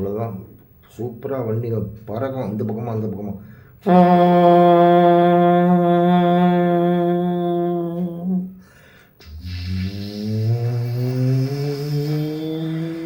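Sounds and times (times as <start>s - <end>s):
person humming train imitation: 3.9s - 8.5s, 9.2s - 13.0s.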